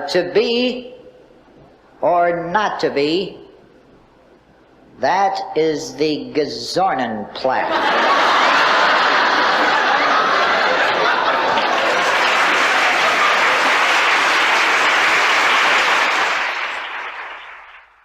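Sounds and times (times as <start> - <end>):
audience applauding: 8.3 - 18.0.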